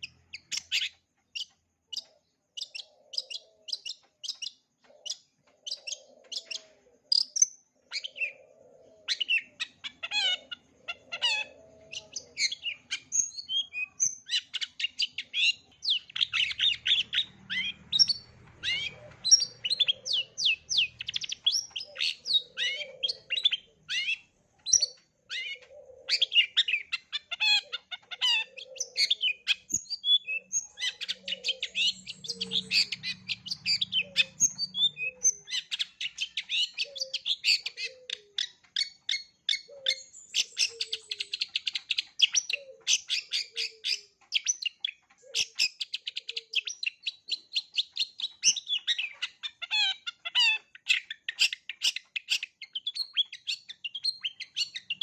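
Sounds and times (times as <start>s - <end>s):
shrike singing varied chirps: 0.0s - 55.0s.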